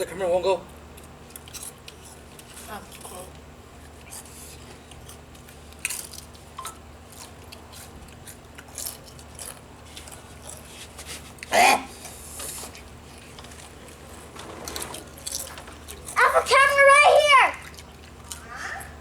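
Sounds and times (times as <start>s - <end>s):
crunchy chips being chewed: 1.0s - 13.4s, 17.6s - 18.5s.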